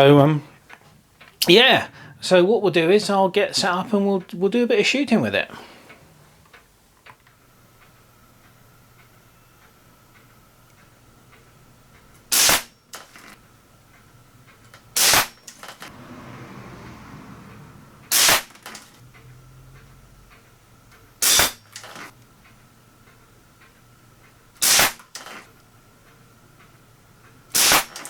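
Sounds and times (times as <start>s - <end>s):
air rifle shots: 12.3s - 13.3s, 15.0s - 15.9s, 18.1s - 19.0s, 21.2s - 22.1s, 24.6s - 25.4s, 27.5s - 28.0s.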